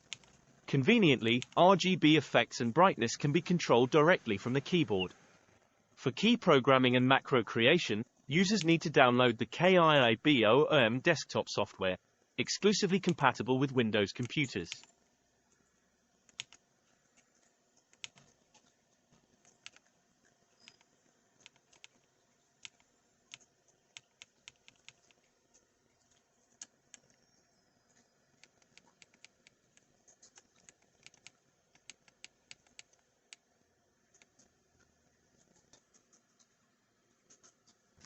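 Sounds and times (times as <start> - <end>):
mechanical keyboard clicks: 16.3 - 16.6, 19.4 - 19.9, 20.6 - 22.0, 22.6 - 25.2, 28.4 - 33.4.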